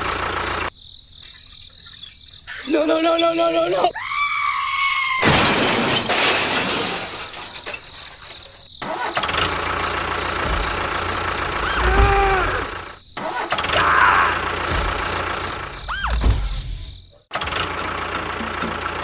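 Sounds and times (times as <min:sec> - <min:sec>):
small motor running: 0:09.6 - 0:13.0.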